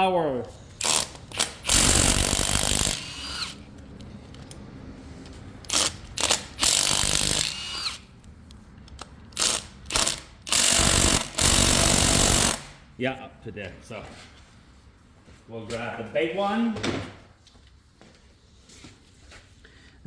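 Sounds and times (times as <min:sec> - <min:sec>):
impact wrench hammering on bolts: 0:00.8 - 0:03.6, 0:05.7 - 0:08.0, 0:09.4 - 0:12.8
motor whine: 0:06.6 - 0:08.0.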